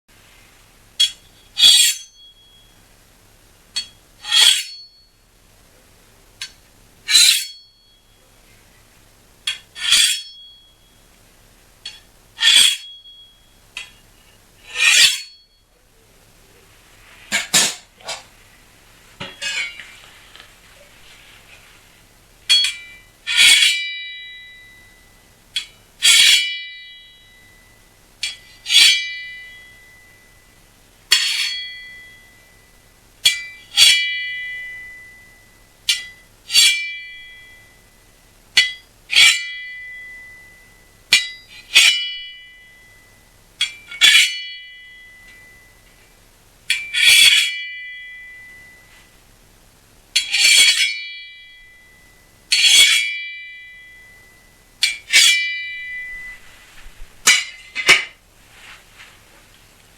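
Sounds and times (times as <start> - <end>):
metallic knife blades clashing: 1.0 - 2.4, 3.8 - 4.9, 6.4 - 7.7, 9.5 - 10.6, 11.8 - 14.0, 14.6 - 15.5, 17.3 - 18.3, 19.2 - 19.8, 22.5 - 25.0, 28.2 - 30.2, 31.1 - 32.4, 33.3 - 37.6, 38.6 - 43.0, 46.7 - 48.8, 50.2 - 58.2.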